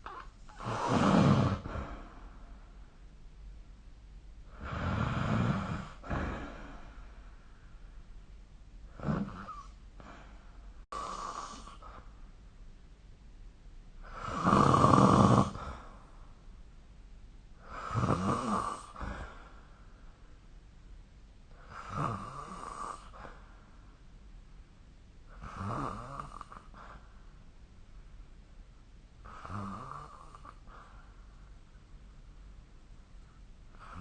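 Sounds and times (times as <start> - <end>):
person snoring: 0.1 - 2.2, 4.5 - 7.0, 8.9 - 10.3, 10.9 - 12.0, 14.0 - 16.0, 17.6 - 19.4, 25.3 - 27.0, 29.2 - 30.8, 33.7 - 34.0.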